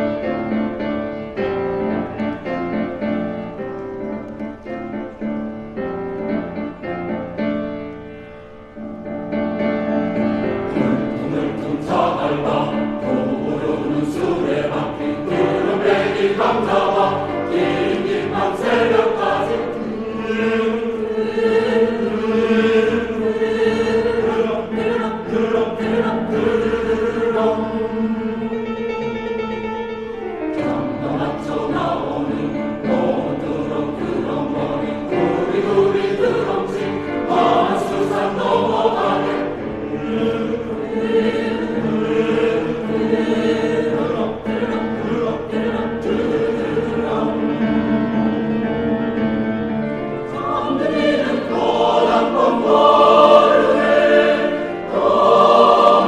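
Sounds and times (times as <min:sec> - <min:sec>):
choir singing: 0:09.1 - 0:56.0.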